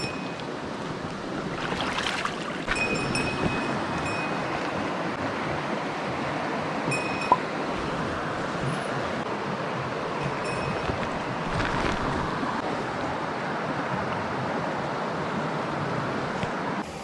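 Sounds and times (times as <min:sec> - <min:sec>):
stream rushing over rocks: 0:00.0 - 0:12.9.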